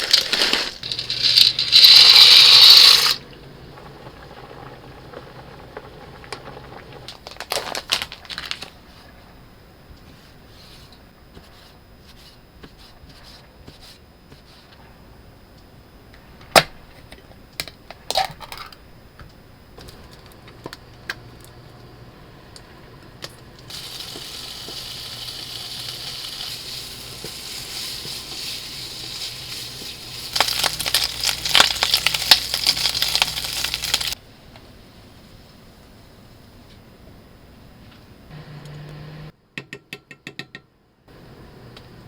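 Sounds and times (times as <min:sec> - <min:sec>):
food sizzling in a pan: 0:00.0 - 0:03.2, 0:23.7 - 0:34.2
oil crackling and spattering: 0:00.0 - 0:08.7, 0:23.7 - 0:34.2.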